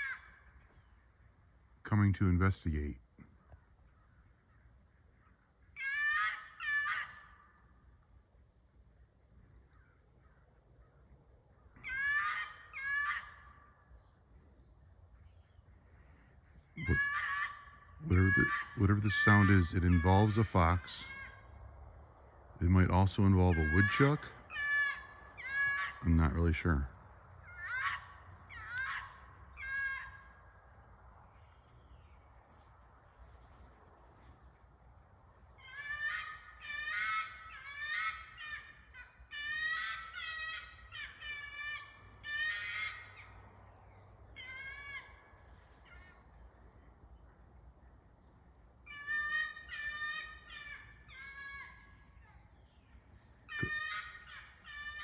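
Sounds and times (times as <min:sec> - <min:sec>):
insects droning: 0:00.0 - 0:55.0
animal screaming: 0:05.8 - 0:07.4, 0:11.8 - 0:13.6, 0:16.8 - 0:21.4, 0:23.4 - 0:26.6, 0:27.4 - 0:30.4, 0:35.6 - 0:43.3, 0:44.4 - 0:46.2, 0:53.5 - 0:55.0
high insect buzz: 0:27.2 - 0:41.2.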